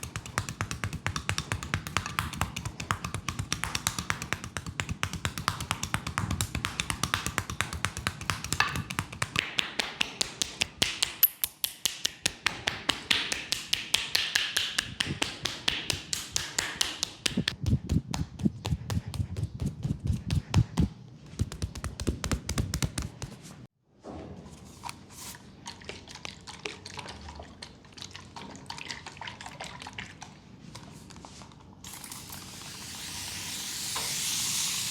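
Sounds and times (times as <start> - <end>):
percussive massage tapping: 0.0 - 23.5.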